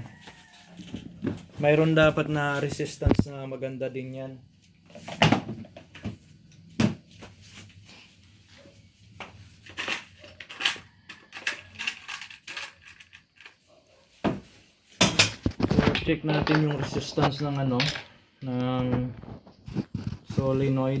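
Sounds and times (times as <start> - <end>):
tools clicking and knocking on workbench: 14.3 - 18.1.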